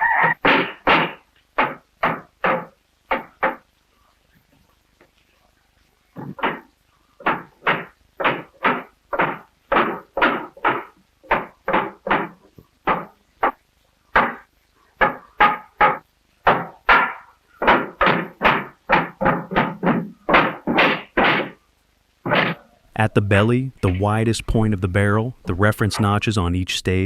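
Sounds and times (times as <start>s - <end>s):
hammer knocking on wood and iron: 0.4s - 3.6s, 6.2s - 13.6s, 14.2s - 21.6s.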